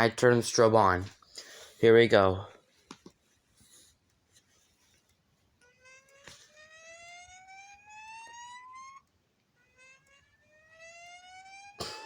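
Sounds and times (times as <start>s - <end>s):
fire alarm whoop tone: 5.6s - 12.0s.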